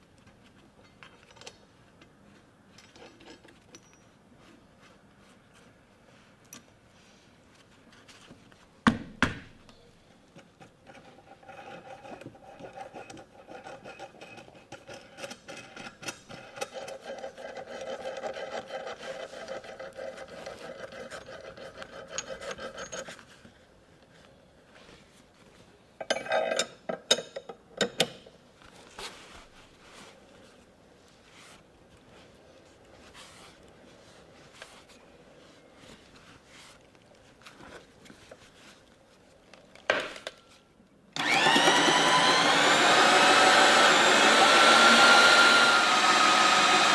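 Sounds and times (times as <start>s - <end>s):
tool rasping on wood: 16.8s - 22.8s.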